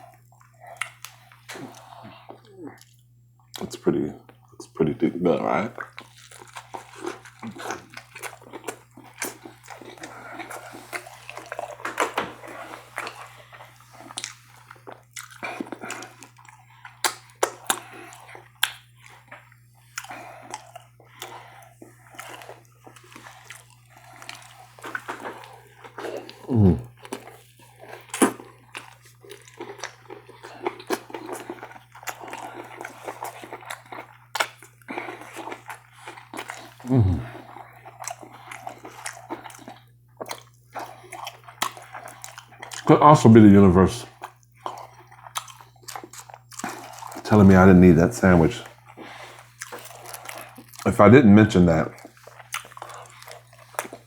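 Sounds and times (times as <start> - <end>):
chewing and wet mouth sounds: 0.0 - 54.0
falling pitched vocal sound: 26.5 - 26.9.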